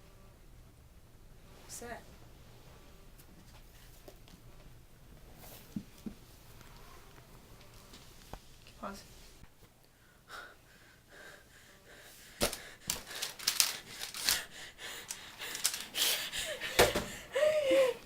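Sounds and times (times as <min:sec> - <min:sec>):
person gasping and breathing hard: 0:10.2 - 0:18.0.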